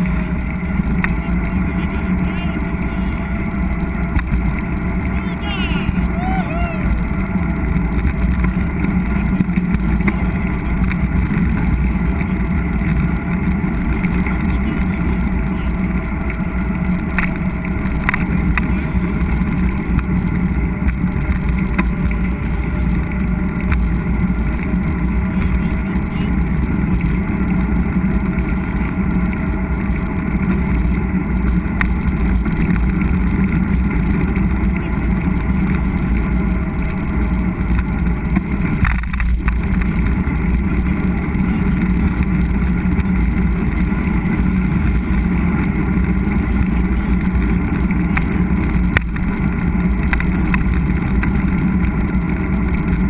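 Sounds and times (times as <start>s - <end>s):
bike riding on dirt trail: 0.0s - 53.0s.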